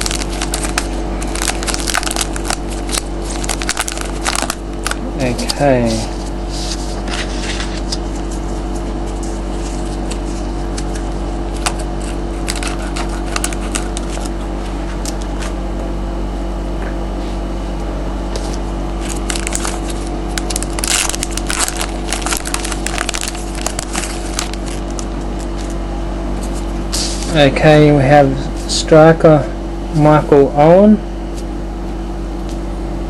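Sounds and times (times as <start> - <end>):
foil wrapper and cards crackling: 0.0 - 14.4, 18.4 - 25.8
steady low hum: 0.0 - 33.0.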